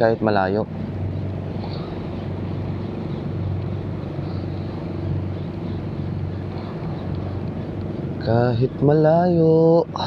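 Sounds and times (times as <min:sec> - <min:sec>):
low engine hum: 0:00.0 - 0:10.0.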